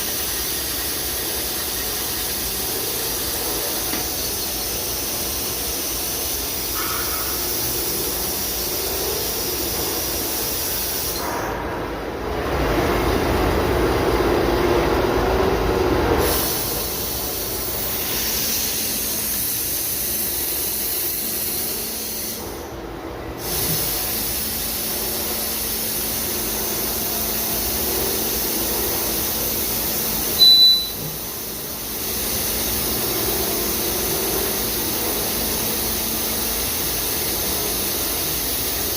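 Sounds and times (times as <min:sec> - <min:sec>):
drilling machine hissing: 0:00.0 - 0:11.2, 0:16.3 - 0:22.6, 0:23.4 - 0:38.9
loud high-pitched beep: 0:30.4 - 0:31.0.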